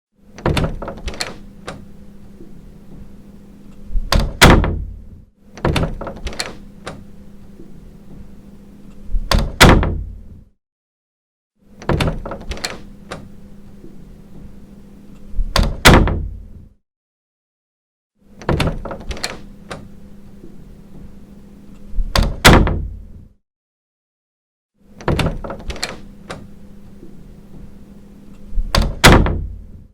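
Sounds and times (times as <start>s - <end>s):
faint steady hum: 0.2s - 10.5s, 11.6s - 16.8s, 18.2s - 23.4s, 24.8s - 29.9s
door latch and handle clicks: 0.4s - 1.9s, 4.1s - 4.8s, 5.6s - 7.1s, 11.8s - 13.3s, 18.4s - 19.9s, 25.0s - 26.5s, 28.7s - 29.5s
door shutting with a thud: 0.4s - 3.1s, 3.9s - 7.1s, 9.1s - 10.5s, 11.8s - 14.5s, 15.4s - 16.8s, 18.4s - 19.9s, 22.0s - 23.3s, 25.0s - 27.7s, 28.5s - 29.9s.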